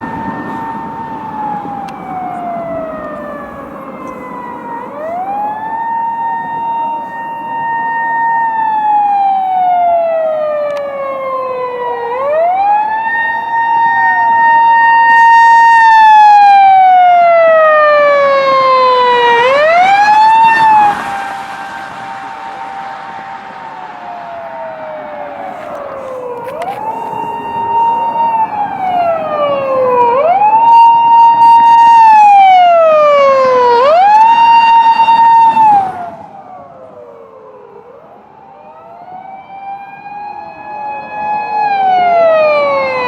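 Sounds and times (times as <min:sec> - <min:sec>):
emergency siren wailing: 0:00.0 - 0:43.0
faint second siren: 0:00.0 - 0:43.0
faint steady tone: 0:19.4 - 0:29.6.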